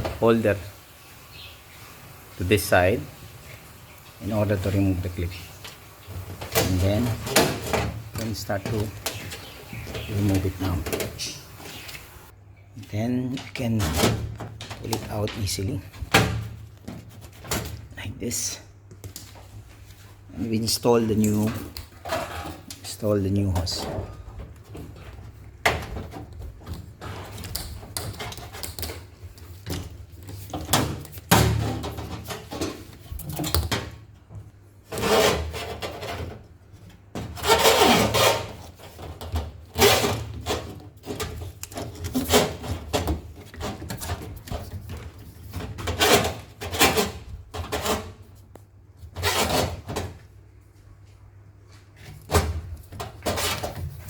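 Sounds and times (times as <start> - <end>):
hose rubbing and scraping: 1.8 - 12.3, 19.7 - 30.8, 34.8 - 36.5, 37.3 - 48.4, 49.1 - 50.0, 52.8 - 54.0.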